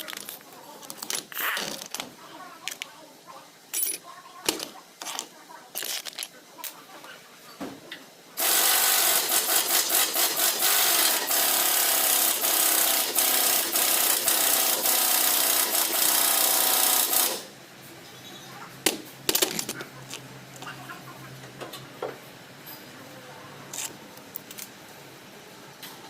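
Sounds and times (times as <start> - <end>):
pneumatic impact wrench hammering: 8.4 - 17.5.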